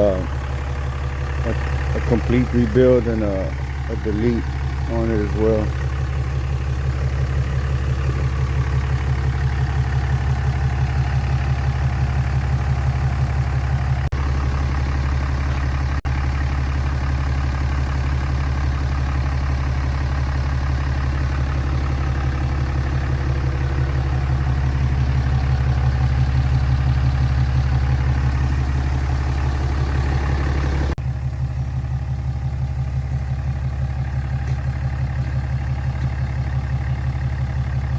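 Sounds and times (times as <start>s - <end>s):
diesel engine idling: 0.0s - 37.9s.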